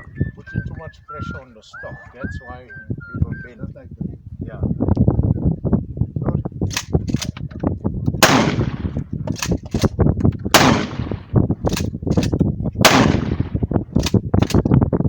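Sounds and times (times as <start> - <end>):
rifle shots with ringing echo: 8.2 - 9.9, 10.5 - 14.6.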